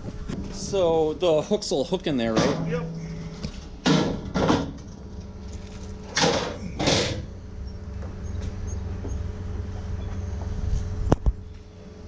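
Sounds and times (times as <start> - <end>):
steady low hum: 0.0 - 12.0
metal panel clunks and scrapes: 2.2 - 7.4.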